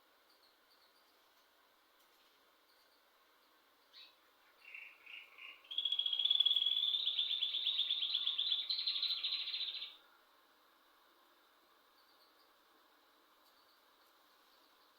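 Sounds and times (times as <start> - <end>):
bird chirping and trilling: 3.9 - 10.0.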